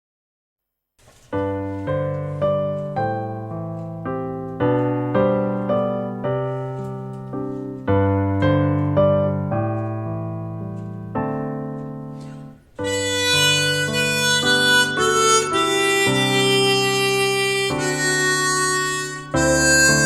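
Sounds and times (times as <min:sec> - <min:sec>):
piano single notes: 0:01.0 - 0:20.0
harmonica melody: 0:11.8 - 0:20.0.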